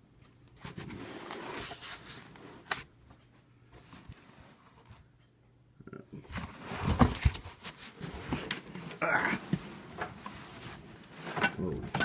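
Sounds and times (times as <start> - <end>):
cardboard box scraping and rustling: 6.4 - 8.5.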